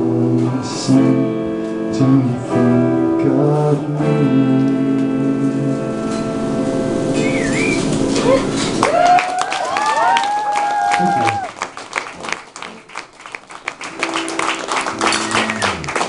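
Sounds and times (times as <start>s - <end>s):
person singing: 0.0s - 6.3s.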